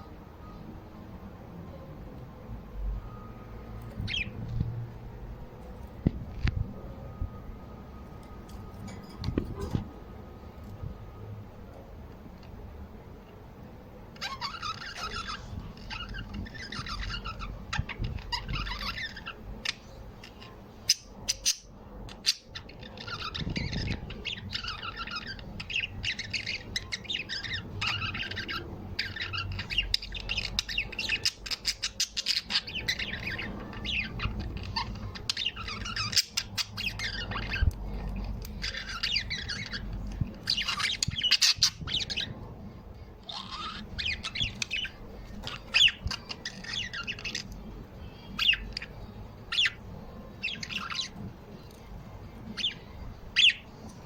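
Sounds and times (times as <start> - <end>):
small birds chirping and squawking: 3.0 - 4.9, 14.0 - 54.0.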